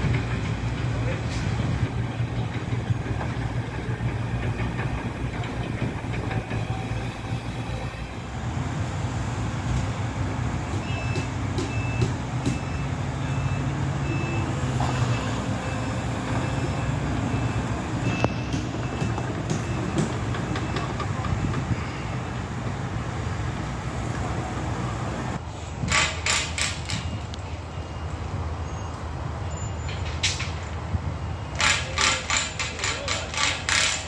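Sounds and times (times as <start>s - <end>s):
construction vehicle engine running: 0.0s - 34.0s
reversing alarm beeping: 10.8s - 22.3s, 27.0s - 30.0s.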